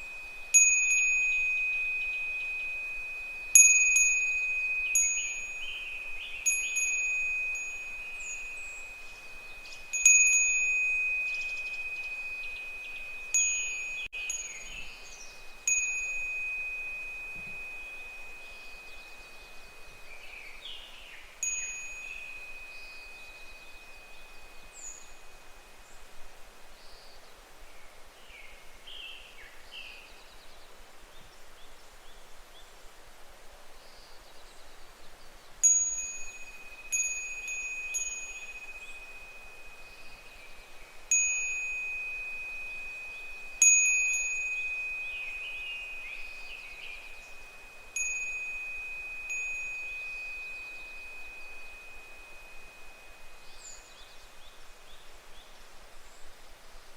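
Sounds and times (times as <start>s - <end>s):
wind bell ringing: 0.0s - 25.8s, 35.6s - 54.8s
outdoor hiss: 0.0s - 56.9s.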